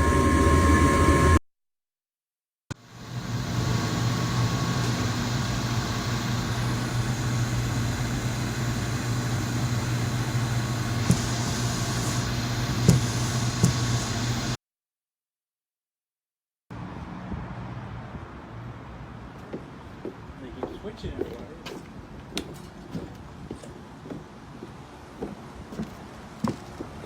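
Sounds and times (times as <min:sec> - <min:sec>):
machinery humming: 0:00.0 - 0:01.4, 0:02.8 - 0:14.6.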